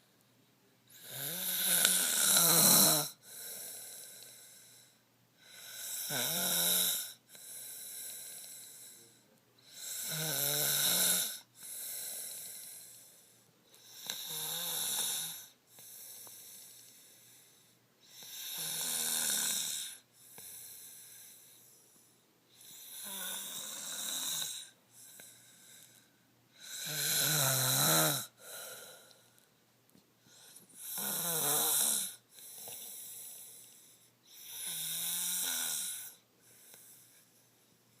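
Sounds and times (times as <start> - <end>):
quiet breathing: 0.0 - 38.0
girl snoring: 0.9 - 4.7, 5.4 - 8.4, 9.7 - 13.0, 13.8 - 15.6, 18.1 - 20.0, 22.6 - 24.8, 26.6 - 29.1, 30.4 - 33.3, 34.3 - 36.2.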